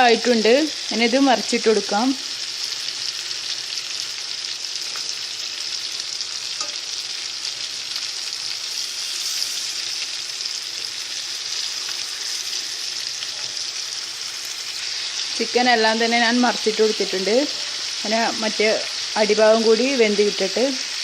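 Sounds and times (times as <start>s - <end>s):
chicken sizzling in hot oil: 0.0s - 21.0s.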